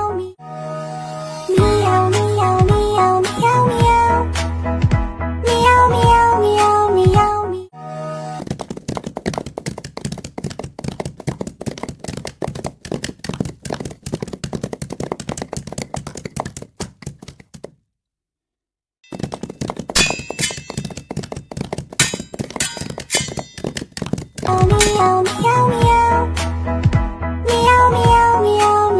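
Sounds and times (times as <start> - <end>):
rapid thuds and taps: 8.4 - 17.8, 19.1 - 26.0.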